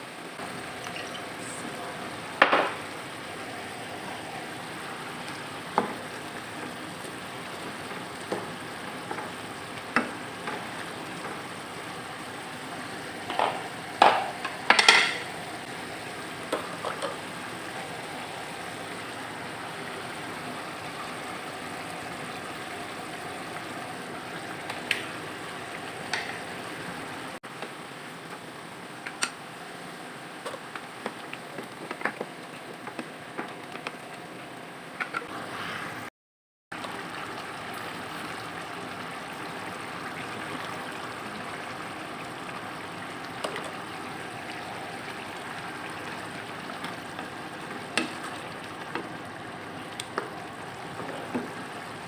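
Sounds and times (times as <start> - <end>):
food sizzling in a frying pan: 0.0 - 36.1, 36.8 - 52.0
metal utensil clanking on pan: 13.3 - 15.3.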